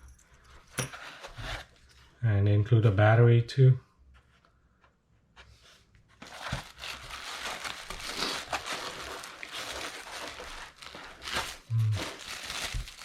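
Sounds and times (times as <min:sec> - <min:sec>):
packaging crinkling and rustling: 0:06.2 - 0:13.0.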